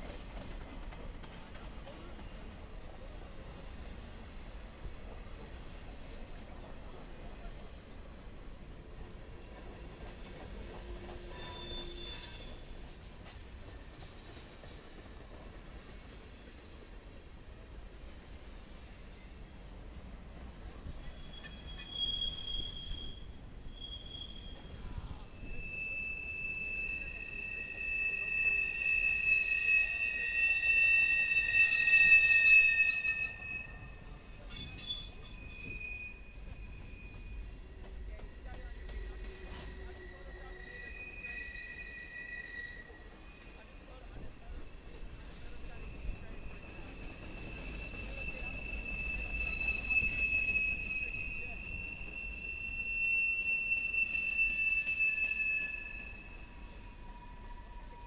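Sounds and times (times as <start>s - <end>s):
wheel squeal: 11.0s - 13.0s, 21.1s - 24.8s, 25.4s - 37.6s, 38.6s - 43.6s, 44.8s - 58.0s.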